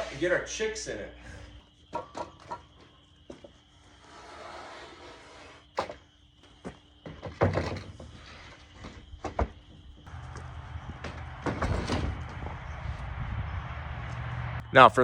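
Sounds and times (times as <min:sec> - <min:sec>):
wooden panels knocking and clattering: 0:06.6 - 0:12.5
steady low hum: 0:08.0 - 0:15.0.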